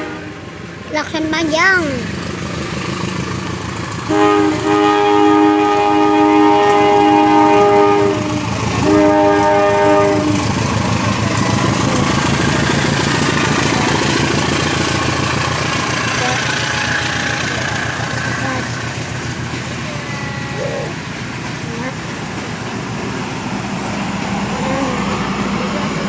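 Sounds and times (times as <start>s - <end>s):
locomotive air horn chord: 0.0s - 0.8s, 4.0s - 25.5s
engine rumble: 0.0s - 26.0s
train wheels rolling: 0.0s - 26.0s.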